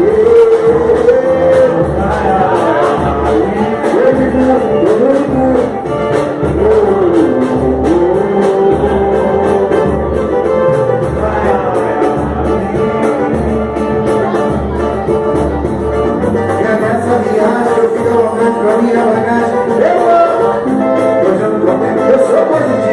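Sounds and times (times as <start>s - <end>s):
low drum beat thumping: 0.0s - 17.6s
person singing: 0.0s - 22.9s.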